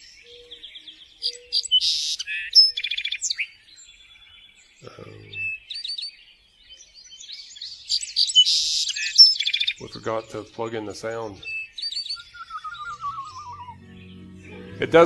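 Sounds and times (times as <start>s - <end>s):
songbird singing: 0.0s - 15.0s.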